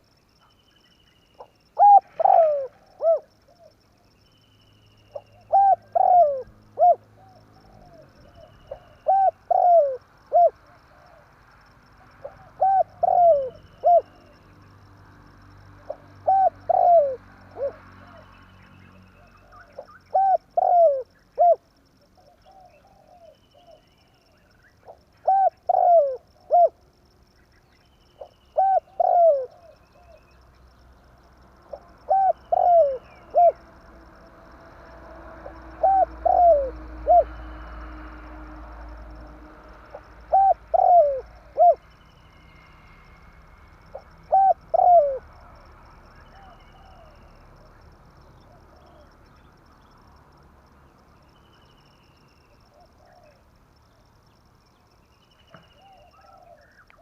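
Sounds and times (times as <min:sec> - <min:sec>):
dove cooing: 0:01.4 - 0:03.8, 0:05.1 - 0:11.3, 0:12.0 - 0:14.5, 0:15.9 - 0:18.3, 0:19.2 - 0:23.9, 0:24.7 - 0:26.8, 0:28.2 - 0:30.4, 0:31.7 - 0:33.8, 0:35.2 - 0:37.6, 0:39.9 - 0:41.8, 0:43.9 - 0:45.6, 0:46.2 - 0:47.7, 0:52.7 - 0:53.4, 0:55.8 - 0:56.7.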